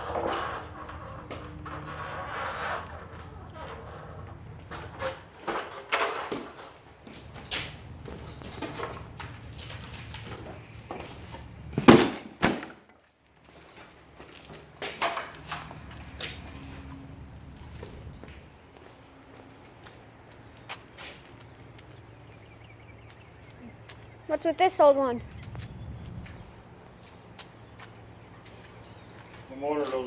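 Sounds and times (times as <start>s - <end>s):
clicks and knocks of tools handled: 13.7s - 17.2s.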